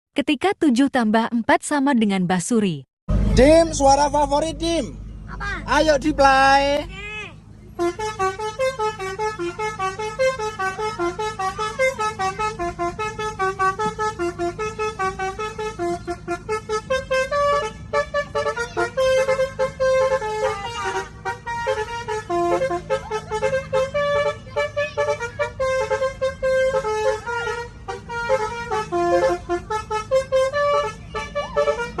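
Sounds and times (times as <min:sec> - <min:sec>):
steady low hum: 0:03.1 - 0:32.0
musical air horn melody: 0:07.8 - 0:32.0.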